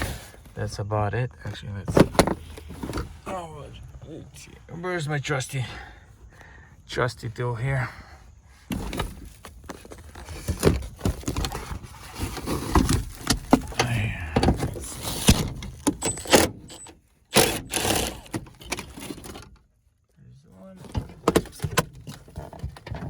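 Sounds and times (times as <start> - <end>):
hand tools clinking and rattling: 8.8 - 19.6.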